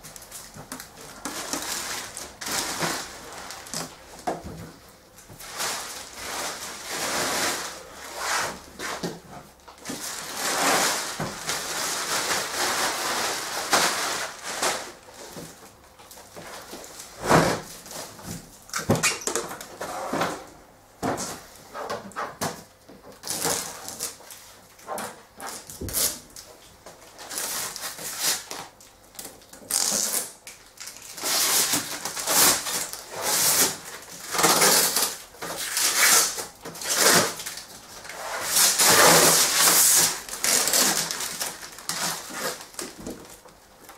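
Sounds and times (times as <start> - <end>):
packing tape being peeled: 0.0 - 4.0, 9.8 - 15.3, 23.1 - 43.9
plastic wrapping rustling: 0.0 - 20.4, 21.1 - 43.9.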